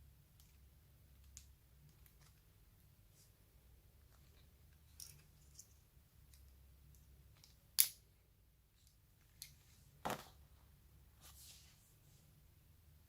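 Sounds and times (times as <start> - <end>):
soft rustle: 8.8 - 12.5.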